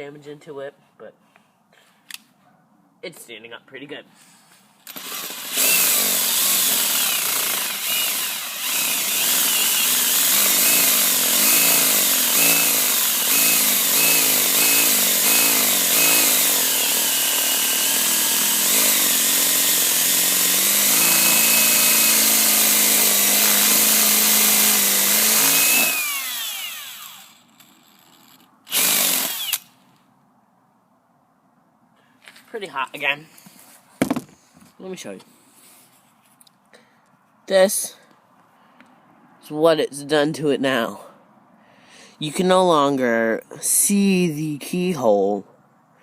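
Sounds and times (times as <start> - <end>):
power drill boring into metal: 4.9 - 29.7.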